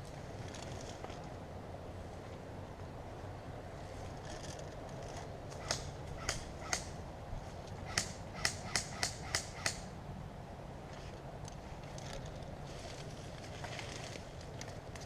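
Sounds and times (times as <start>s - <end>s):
airsoft guns firing: 7.9s - 9.9s.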